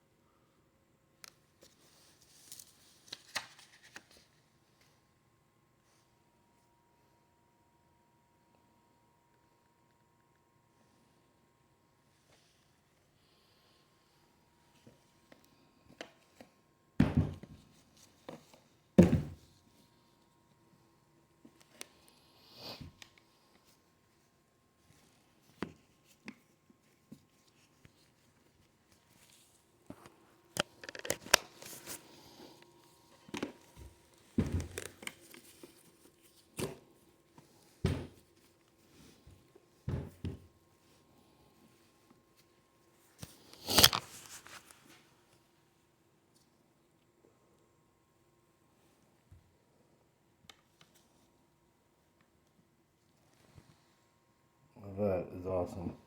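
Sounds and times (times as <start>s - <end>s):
box thumping down: 19.0s - 19.4s
packaging crinkling and tearing: 43.4s - 44.7s.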